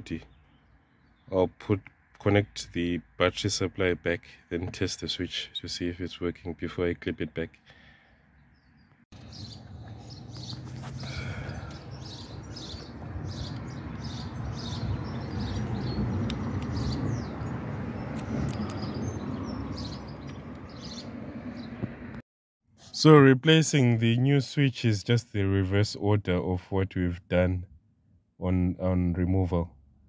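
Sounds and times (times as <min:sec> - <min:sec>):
birds chirping: 0:00.0 - 0:22.0.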